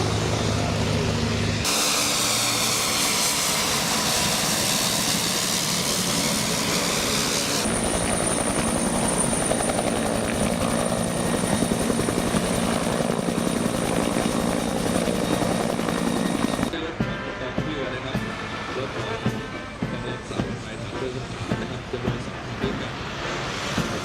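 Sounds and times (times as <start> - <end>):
helicopter rotor and engine: 0.0 - 17.3.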